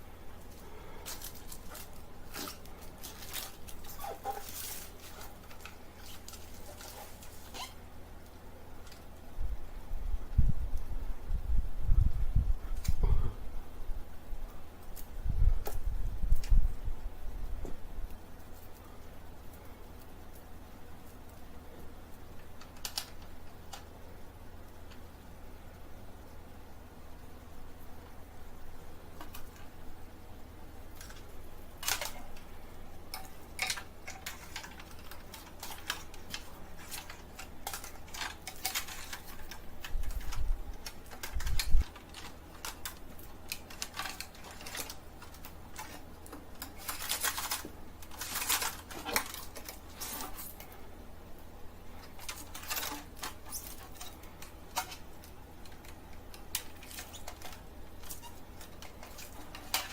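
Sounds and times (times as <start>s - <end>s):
plastic packaging being handled: 0.0s - 9.2s, 30.8s - 50.8s, 51.8s - 59.9s
steady low hum: 0.0s - 59.9s.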